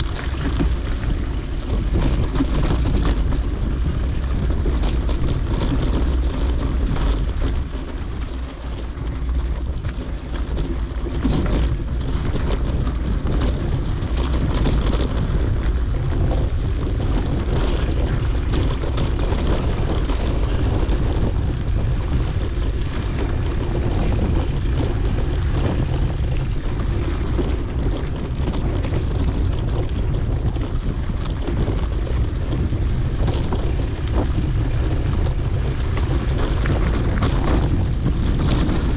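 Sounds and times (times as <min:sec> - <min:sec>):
small clicks and rattles: 0:00.0 - 0:38.9
tyres rolling on dirt road: 0:00.0 - 0:38.9
wind buffeting microphone: 0:00.0 - 0:38.9.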